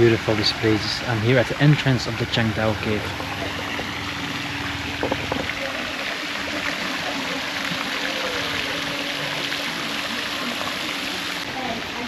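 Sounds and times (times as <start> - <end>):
faint steady hum: 0.0 - 12.0
running water rushing: 0.0 - 12.0.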